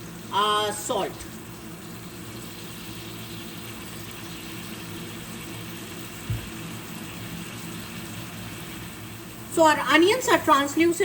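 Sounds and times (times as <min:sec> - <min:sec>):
onions sizzling in a pan: 0:00.0 - 0:11.0
soft thump: 0:06.3 - 0:06.5.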